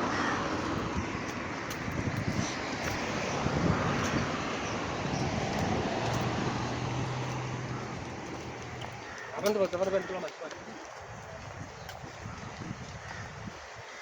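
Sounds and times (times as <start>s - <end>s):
wind noise on microphone: 0.0s - 9.1s, 10.6s - 14.0s
vehicle engine passing: 2.2s - 9.1s.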